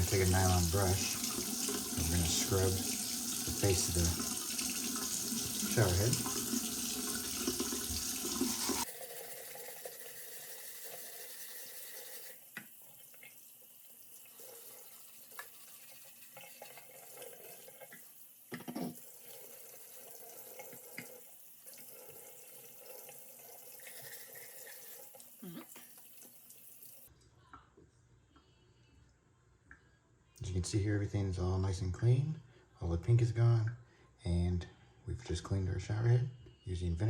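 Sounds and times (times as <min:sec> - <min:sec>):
tap water running into sink: 0:00.0 - 0:27.1.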